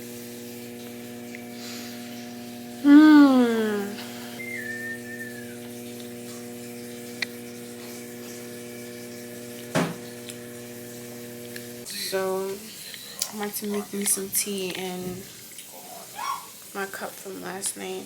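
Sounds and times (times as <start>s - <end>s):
electrical hum: 0.0s - 18.0s
falling vocal groan: 2.8s - 4.0s
thump: 9.7s - 10.0s.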